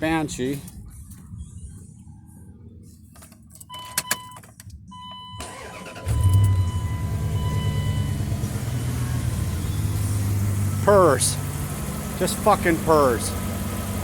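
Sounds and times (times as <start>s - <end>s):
engine cranking and idling: 5.4s - 14.0s.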